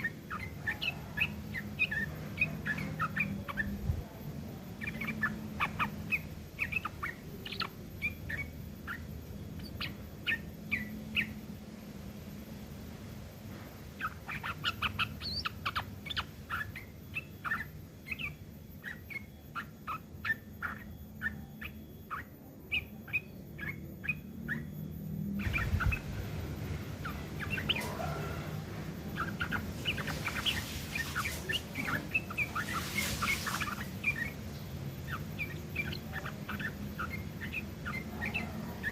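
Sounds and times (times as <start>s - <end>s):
bird harsh chattering: 25.4s - 38.9s.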